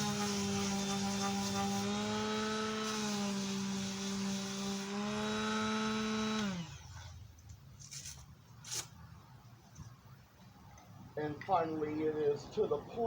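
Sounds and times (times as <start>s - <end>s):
electric sander whining: 0.0s - 7.0s.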